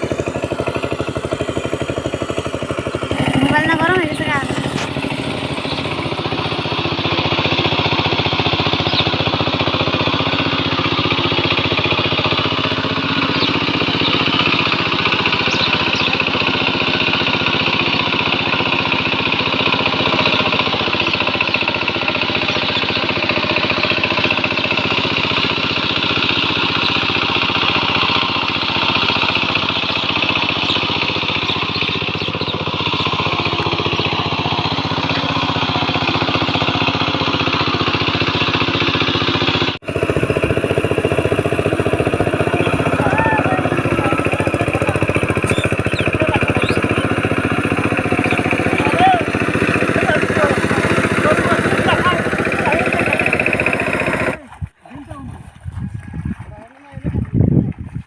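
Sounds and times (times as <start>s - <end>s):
small engine running: 0.0s - 58.0s.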